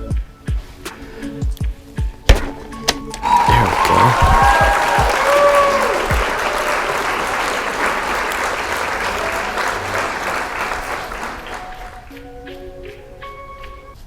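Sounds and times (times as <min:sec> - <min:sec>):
whistles: 0:02.4 - 0:14.0
crowd applause and cheering: 0:03.1 - 0:12.2.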